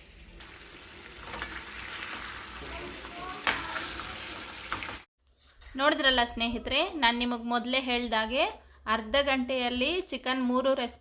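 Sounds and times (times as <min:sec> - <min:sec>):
chicken sizzling in a pan: 0:00.0 - 0:05.1.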